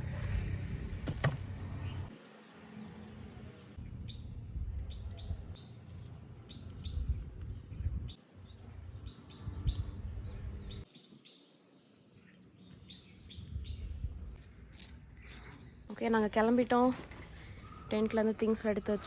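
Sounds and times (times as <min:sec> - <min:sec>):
birds chirping: 0:14.7 - 0:19.0.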